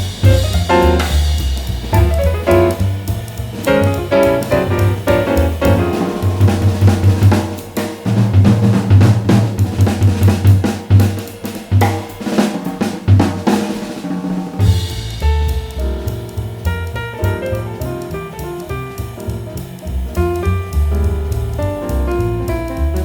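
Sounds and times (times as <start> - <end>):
up-tempo drum and bass music: 0.0 - 23.0.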